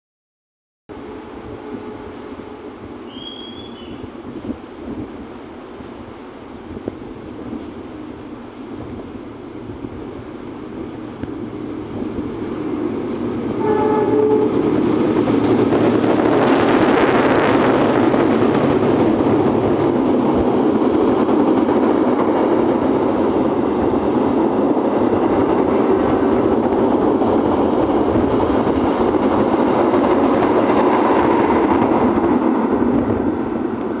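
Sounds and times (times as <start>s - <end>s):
train wheels rushing on rails: 1.0s - 34.0s.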